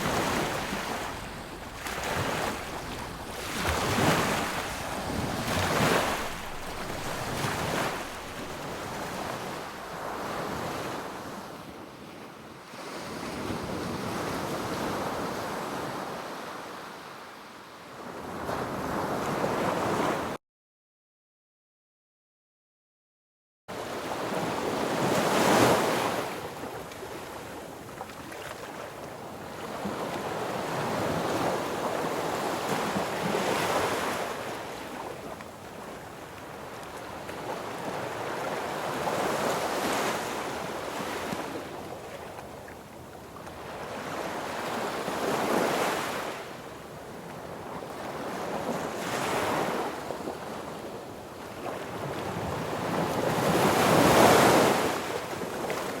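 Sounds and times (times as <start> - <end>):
sea waves breaking on beach: 0.0 - 11.6, 23.8 - 50.8, 51.5 - 56.0.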